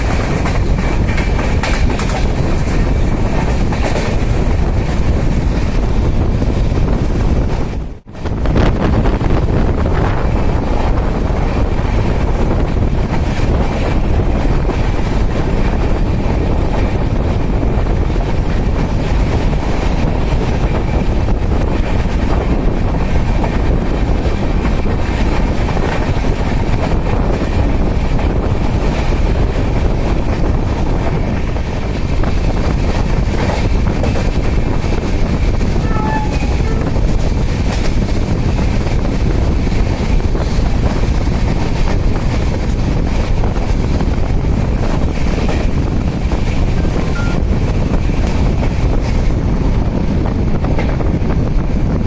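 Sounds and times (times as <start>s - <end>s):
train wheels rumbling on rail: 0.0s - 52.0s
wind buffeting microphone: 0.0s - 52.0s.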